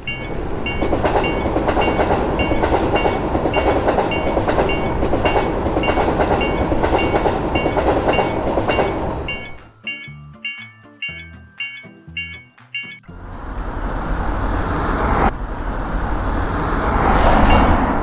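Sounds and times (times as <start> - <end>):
train rumble and wheel clatter: 0.0 - 9.6, 13.1 - 18.0
crossing warning bell ringing: 0.0 - 13.2, 17.3 - 18.0.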